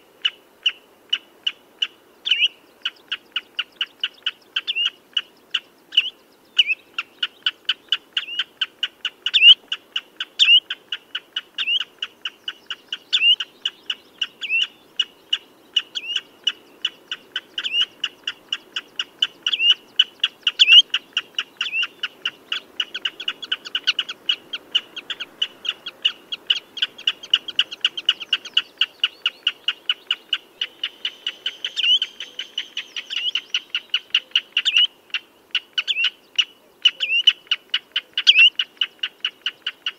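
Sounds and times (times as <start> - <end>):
bird high piping calls: 0.2 - 39.9.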